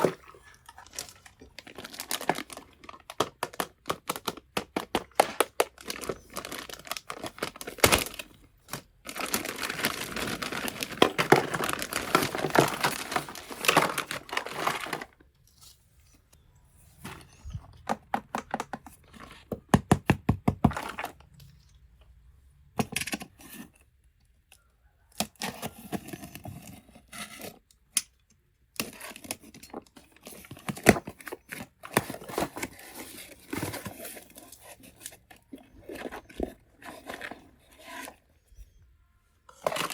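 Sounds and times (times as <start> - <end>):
plastic packaging tearing and crinkling: 0.0 - 15.2, 39.5 - 39.9.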